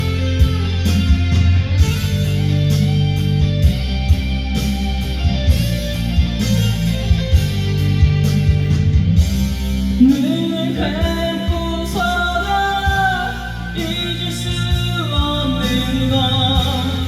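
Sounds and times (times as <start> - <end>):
electric guitar: 0.0 - 17.0
rock band instrumental: 0.0 - 17.0.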